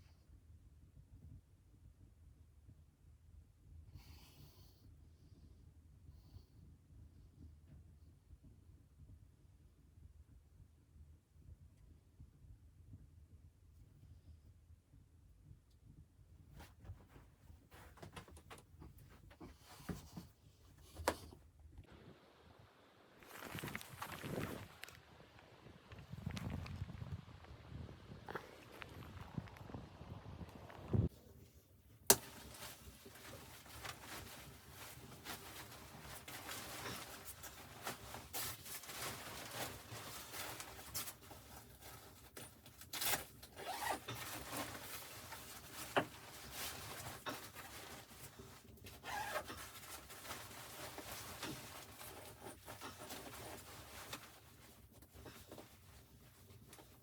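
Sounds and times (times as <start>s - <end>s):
rustling handling noises: 16.5s - 22.1s, 23.1s - 57.0s.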